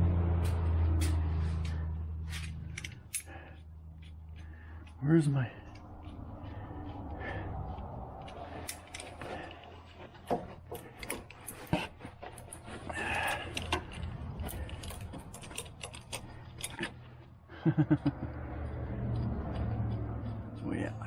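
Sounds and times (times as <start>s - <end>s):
metal hand tools clinking: 2.3s - 3.6s, 10.7s - 17.2s.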